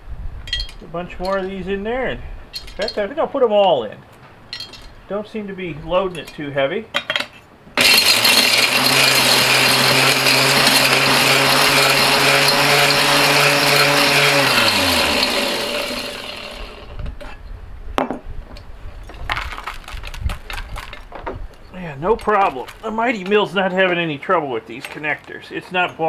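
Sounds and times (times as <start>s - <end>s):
connectors rattling being shredded: 2.5s - 3.2s, 7.8s - 17.2s, 19.0s - 26.0s
crusher motor humming: 7.8s - 17.3s, 21.7s - 23.4s.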